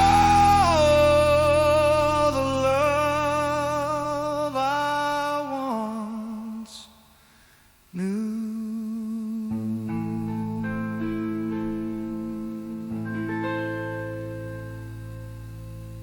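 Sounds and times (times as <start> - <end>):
guitar notes: 0.0 - 4.0, 9.8 - 16.0
low sustained backing: 0.0 - 6.1, 9.4 - 16.0
person singing with vibrato: 0.0 - 7.2, 7.9 - 14.6.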